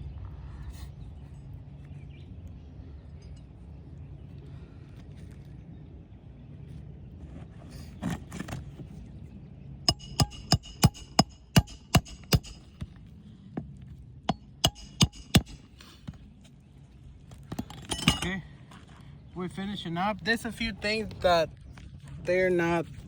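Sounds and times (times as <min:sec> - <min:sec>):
hammer driving nails: 0:09.9 - 0:12.7, 0:14.6 - 0:15.6.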